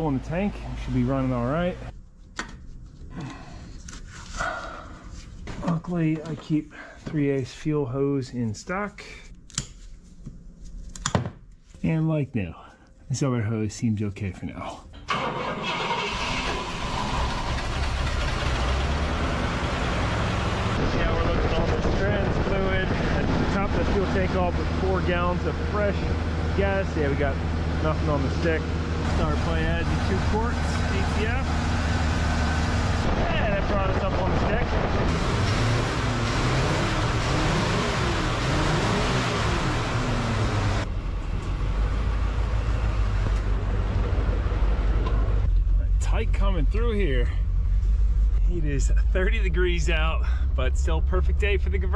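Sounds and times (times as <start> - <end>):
car engine idling: 15.1 - 33.9, 34.5 - 51.9
loud rushing with wavering tones: 46.7 - 51.9.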